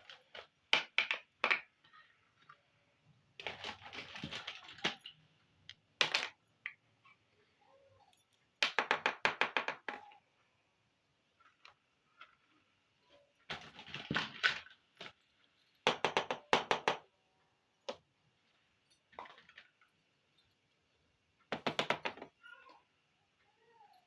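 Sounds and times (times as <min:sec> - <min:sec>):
plastic toy pieces clicking and rattling: 0:03.4 - 0:05.3.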